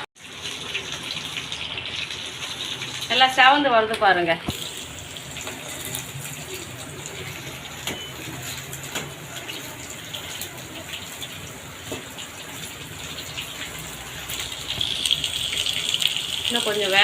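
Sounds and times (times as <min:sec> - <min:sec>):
chicken sizzling in hot oil: 0:00.0 - 0:17.0
oil crackling: 0:04.5 - 0:17.0.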